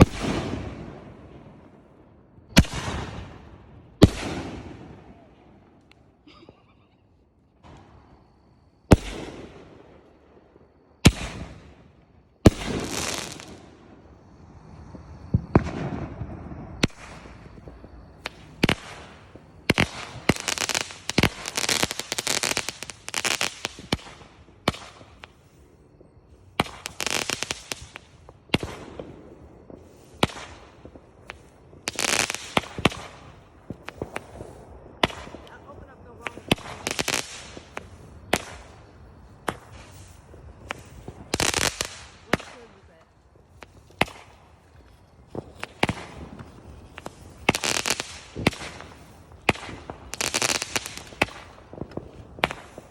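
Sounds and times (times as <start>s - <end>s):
crackling firework bursts: 0.0s - 52.9s
firework shells bursting: 26.3s - 52.9s.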